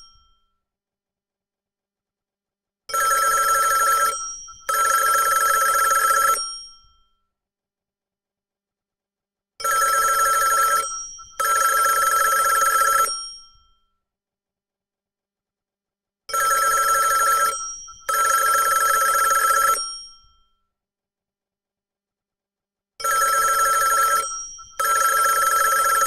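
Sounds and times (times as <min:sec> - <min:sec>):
telephone bell ringing: 0:03.0 - 0:06.5, 0:09.6 - 0:13.2, 0:16.4 - 0:19.9, 0:23.0 - 0:26.0.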